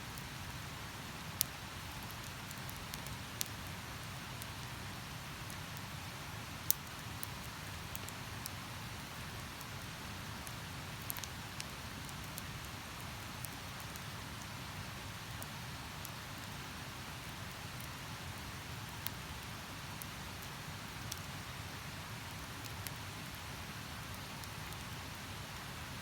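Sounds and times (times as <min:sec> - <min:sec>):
campfire crackling and popping: 0:01.3 - 0:04.7, 0:06.6 - 0:08.4, 0:09.0 - 0:14.2, 0:18.9 - 0:19.2, 0:20.0 - 0:21.2, 0:22.3 - 0:24.9.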